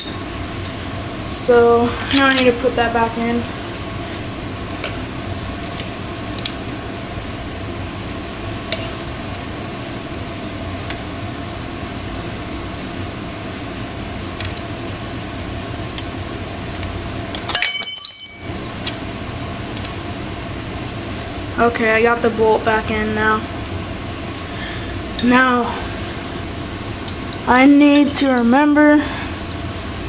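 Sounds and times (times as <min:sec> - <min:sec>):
loud ringing metallic clink: 0:00.0 - 0:00.8, 0:17.4 - 0:19.2, 0:27.8 - 0:28.6
metal tools clinking: 0:00.0 - 0:00.8, 0:17.3 - 0:19.1, 0:27.8 - 0:28.5
steady background hum: 0:00.0 - 0:30.0.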